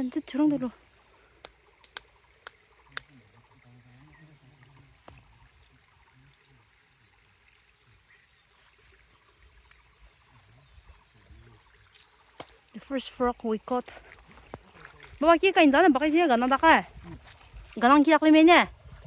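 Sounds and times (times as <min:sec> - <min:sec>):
faint trickling water: 0:00.0 - 0:19.0
sharp clicks: 0:01.4 - 0:03.1.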